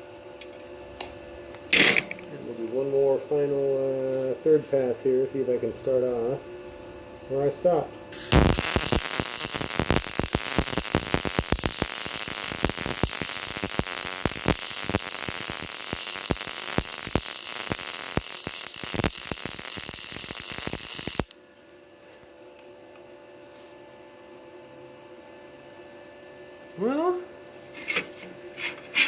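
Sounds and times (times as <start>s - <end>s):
welding arc crackling: 8.2s - 21.4s.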